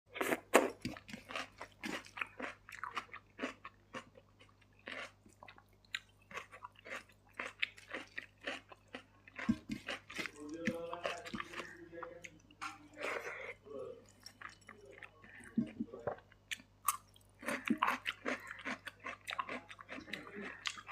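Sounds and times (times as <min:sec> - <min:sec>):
wet chewing mouth sounds: 0:00.1 - 0:20.9.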